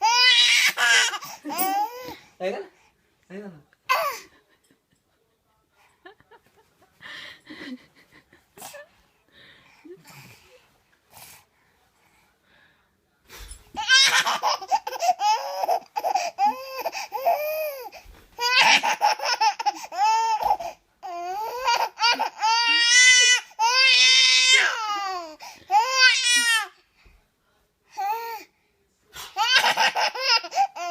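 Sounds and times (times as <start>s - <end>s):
baby laughing: 0.0s - 2.1s, 13.8s - 23.8s, 29.4s - 30.9s.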